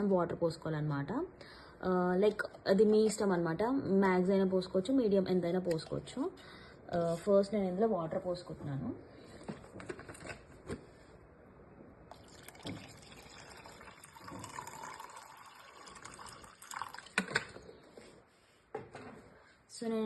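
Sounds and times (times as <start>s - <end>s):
water pouring into reservoir: 12.1s - 17.5s.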